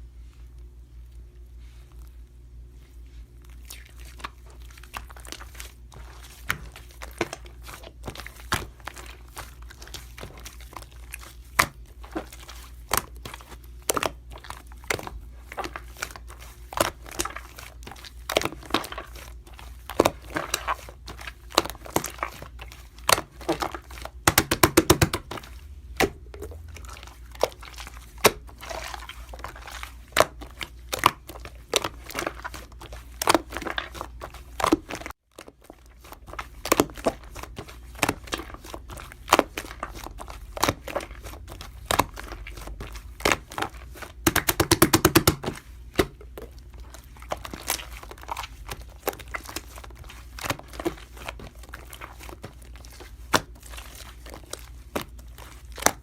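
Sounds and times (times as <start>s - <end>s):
slime squished by hand popping: 24.2s - 25.3s, 44.2s - 46.3s.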